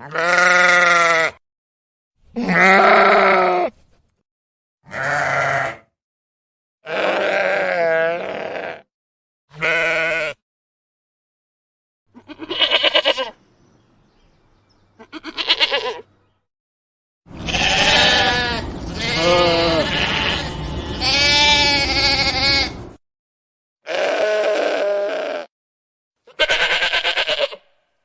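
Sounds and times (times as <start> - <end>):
lambs bleating: 0.0 - 1.4, 2.4 - 3.7, 4.8 - 5.9, 6.8 - 8.9, 9.5 - 10.4, 12.1 - 13.4, 15.0 - 16.0, 17.3 - 22.8, 23.9 - 25.5, 26.3 - 27.7
low background rumble: 17.4 - 23.0.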